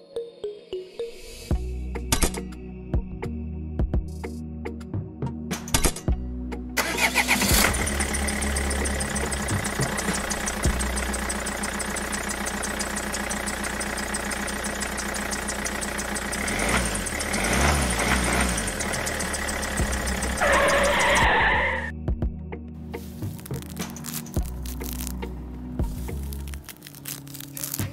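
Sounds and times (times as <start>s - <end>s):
engine starter clicks: 6.8s - 21.3s
tractor engine idling: 6.8s - 21.8s.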